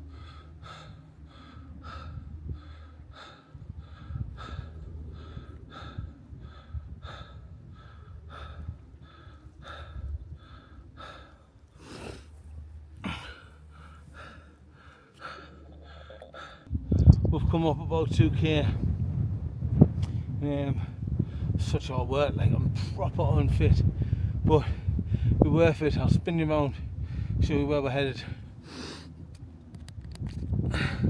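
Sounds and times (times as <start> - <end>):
man panting hard: 0.0 - 16.7, 20.1 - 21.6, 22.6 - 25.4, 26.8 - 27.4, 28.2 - 29.2, 30.6 - 31.0.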